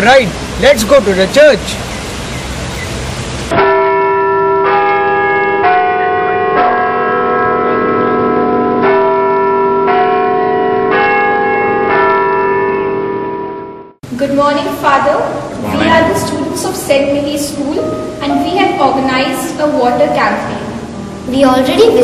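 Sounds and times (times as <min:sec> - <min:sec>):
church bells ringing: 0:03.5 - 0:13.9, 0:15.5 - 0:20.6.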